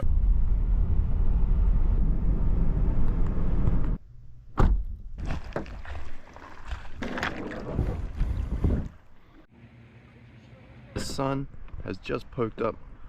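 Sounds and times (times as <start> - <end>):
kayak paddle splashing water: 5.2 - 9.4
wind rumbling on microphone: 6.7 - 9.2.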